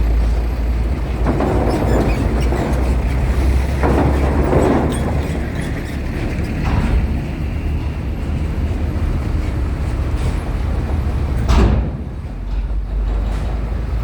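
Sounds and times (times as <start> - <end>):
heavy vehicles rumbling: 0.0 - 14.0.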